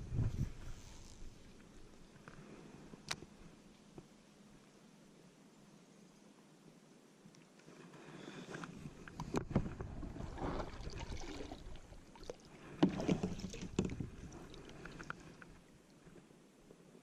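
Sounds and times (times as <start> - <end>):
paddle strokes: 7.6 - 16.4
water sloshing: 9.1 - 15.8.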